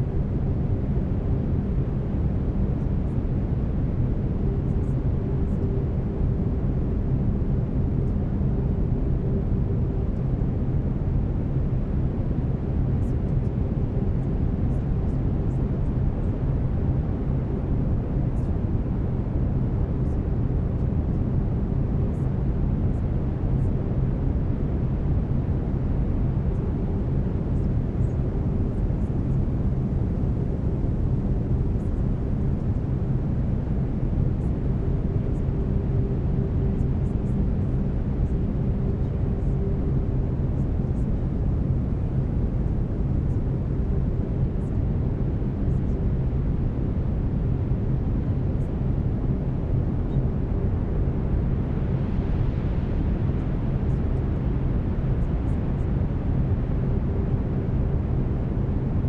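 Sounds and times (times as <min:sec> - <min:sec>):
faint hum tones: 0:00.0 - 0:59.0.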